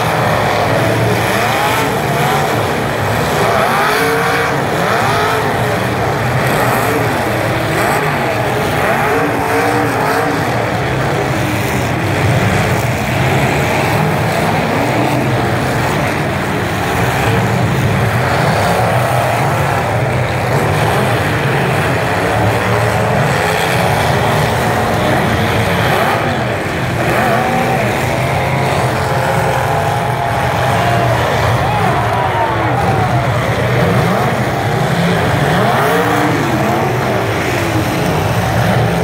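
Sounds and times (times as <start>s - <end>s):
truck engines revving: 0.0s - 39.0s.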